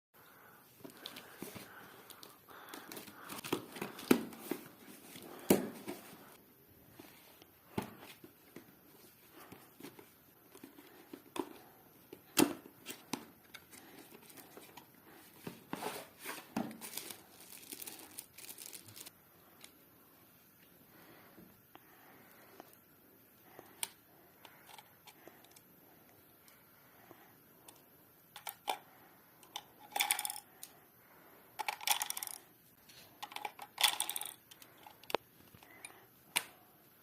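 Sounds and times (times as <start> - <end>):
wrapping tearing and crinkling: 16.7 - 19.1.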